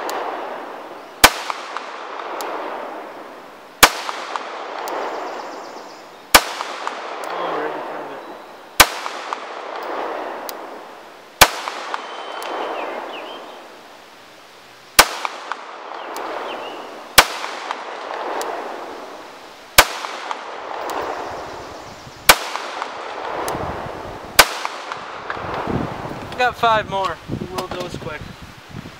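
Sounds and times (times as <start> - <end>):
pistol shots: 0.0 - 3.2, 3.8 - 5.4, 6.3 - 7.9, 8.8 - 10.7, 11.4 - 13.0, 15.0 - 18.9, 19.7 - 21.2, 22.3 - 23.5, 24.3 - 25.6
rolling echo of gunshots: 0.0 - 5.4, 6.3 - 8.1, 8.8 - 10.8, 11.4 - 13.1, 15.0 - 21.4, 22.3 - 25.7.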